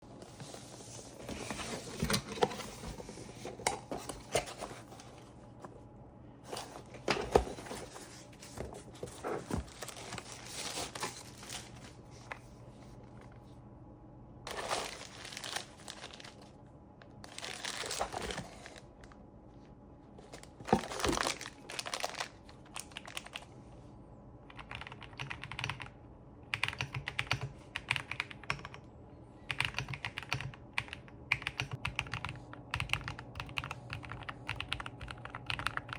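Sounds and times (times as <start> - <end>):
packaging rustling and crinkling: 6.5 - 12.5, 14.5 - 16.6, 17.2 - 19.2, 20.3 - 23.4
mechanical keyboard typing: 24.5 - 25.9, 26.5 - 28.8, 29.5 - 35.9.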